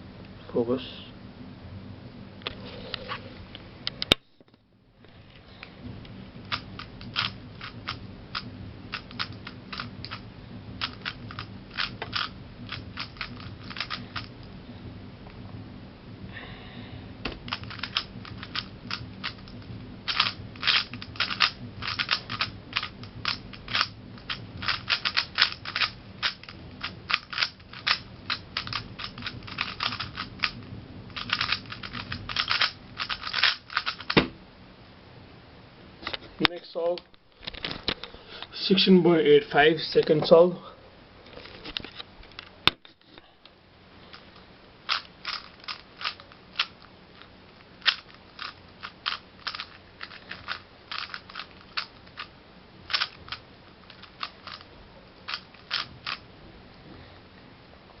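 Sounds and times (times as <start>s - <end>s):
puzzle cube clicking: 6.5s - 10.2s, 10.8s - 14.3s, 17.4s - 34.2s, 44.9s - 46.8s, 47.8s - 52.3s, 52.9s - 54.7s, 55.3s - 56.2s.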